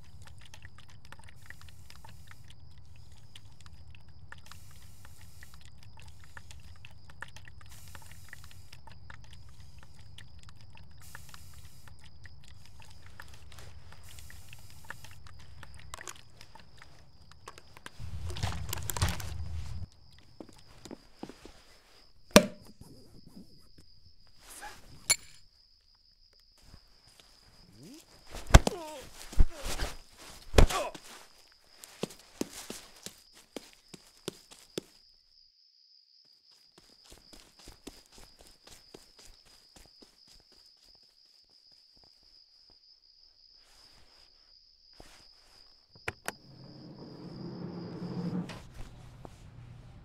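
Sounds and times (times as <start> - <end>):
crickets chirring: 0.0 - 49.2
low hum: 18.0 - 20.1, 46.4 - 50.0.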